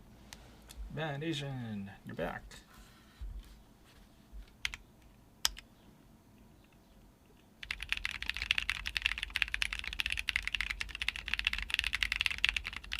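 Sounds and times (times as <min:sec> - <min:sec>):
mechanical keyboard typing: 0:07.6 - 0:12.9.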